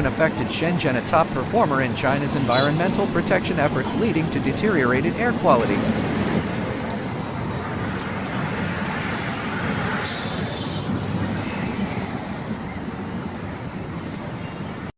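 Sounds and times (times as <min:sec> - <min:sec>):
road traffic noise: 0:00.0 - 0:14.9.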